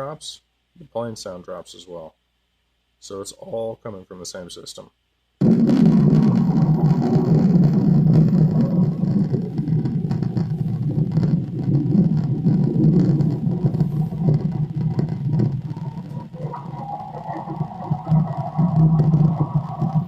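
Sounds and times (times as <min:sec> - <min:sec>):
low droning rumble: 0:05.4 - 0:20.0.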